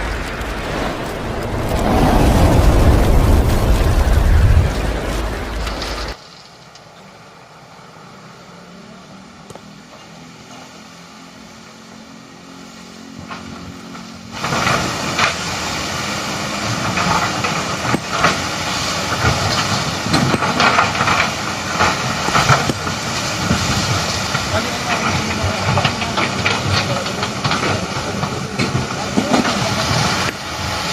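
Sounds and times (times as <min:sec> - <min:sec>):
hissing noise: 0:00.0 - 0:06.2
heavy machinery diesel engine: 0:00.0 - 0:30.9.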